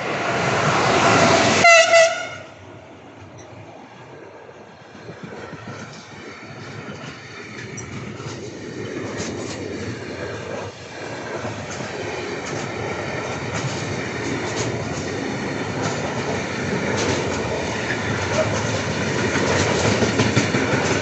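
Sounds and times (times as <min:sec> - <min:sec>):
freight train wheels rumbling: 0:00.0 - 0:21.0
wheels clacking over rail joints: 0:05.2 - 0:21.0.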